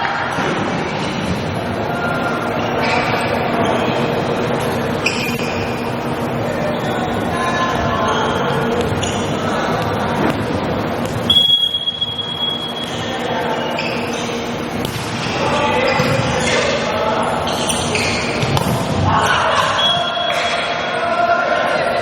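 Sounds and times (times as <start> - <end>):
players and spectators voices: 0.0 - 22.0
referee's whistle: 11.2 - 14.4, 19.5 - 20.6
ball thumps: 14.8 - 16.6.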